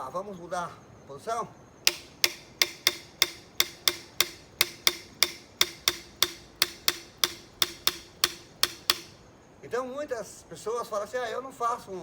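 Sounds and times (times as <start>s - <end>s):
plastic pipe struck hollow hits: 1.9s - 9.2s.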